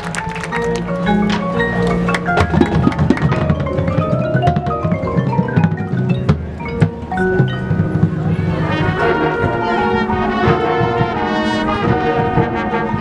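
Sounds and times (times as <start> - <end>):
mallet percussion notes: 0.0 - 13.0
marching band playing: 0.0 - 13.0
sharp percussion strikes: 1.4 - 8.5.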